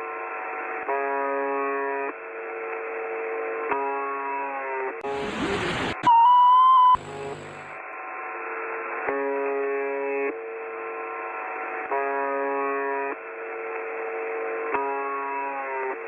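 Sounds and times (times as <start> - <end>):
steady electronic tone: 5.0 - 7.8.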